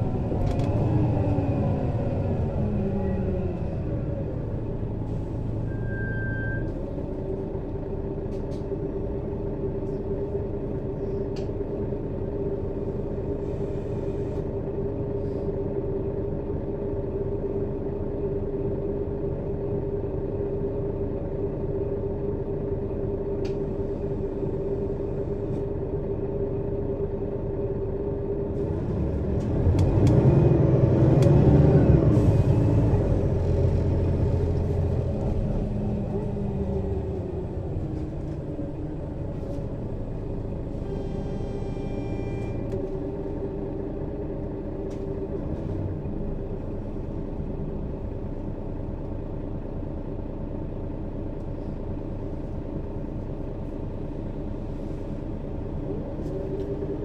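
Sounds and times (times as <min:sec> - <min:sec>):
bus engine revving: 0:00.0 - 0:05.7, 0:28.6 - 0:48.2
bus engine idling with whine: 0:00.0 - 0:57.0.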